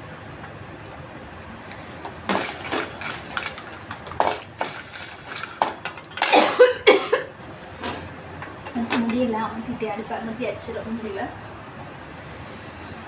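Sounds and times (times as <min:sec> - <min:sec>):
pan and utensil clinking: 0:02.3 - 0:06.6
person coughing: 0:06.2 - 0:07.3.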